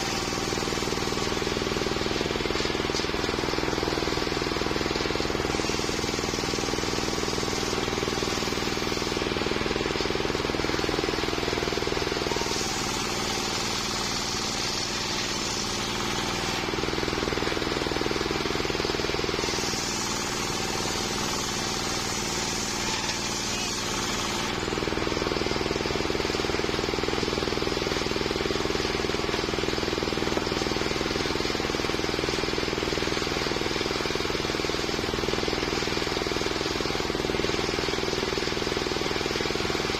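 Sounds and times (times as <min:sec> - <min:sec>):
circular saw cutting log: 0:00.0 - 0:39.9.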